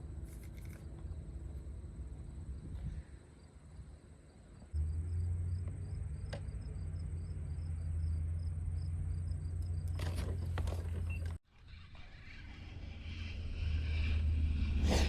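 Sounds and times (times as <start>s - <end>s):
insects chirping faintly: 0.0s - 11.4s
steady low rumble: 12.2s - 15.0s.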